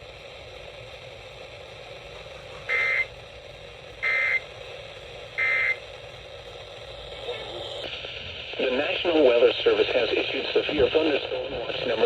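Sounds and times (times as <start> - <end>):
weather radio hiss: 0.0 - 12.0
warbling data bursts: 2.7 - 3.1, 4.0 - 4.4, 5.4 - 5.8.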